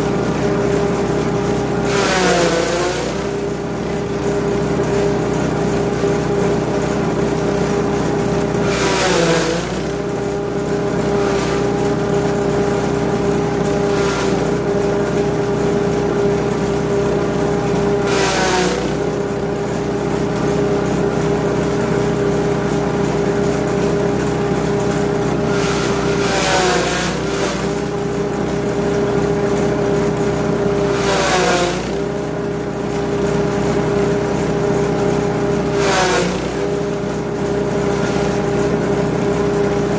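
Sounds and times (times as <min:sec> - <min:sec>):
grass chopper chopping bursts: 0:00.0 - 0:39.9
petrol engine running: 0:00.0 - 0:39.9.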